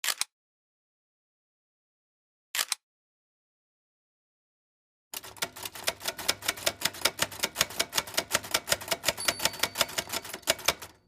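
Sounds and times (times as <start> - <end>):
rapid even clicking: 5.2 - 11.0.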